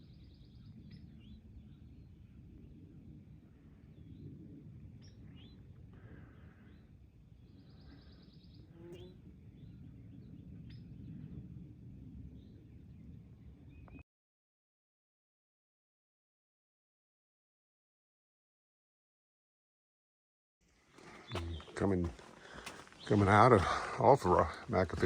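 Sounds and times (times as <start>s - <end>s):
wind rumbling on microphone: 0.0s - 14.0s.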